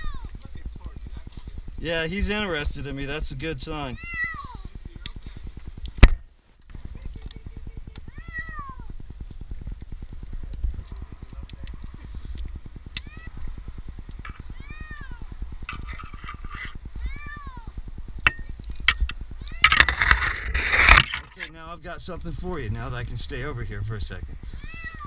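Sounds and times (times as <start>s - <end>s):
kitten meowing: 4.0s - 4.6s, 8.1s - 8.9s, 14.3s - 15.4s, 16.6s - 17.7s, 24.6s - 25.0s.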